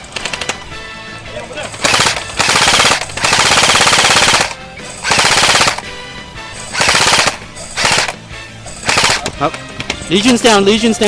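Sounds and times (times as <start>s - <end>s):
airsoft rifle bursts: 1.7s - 5.8s, 6.7s - 8.2s, 8.8s - 9.4s.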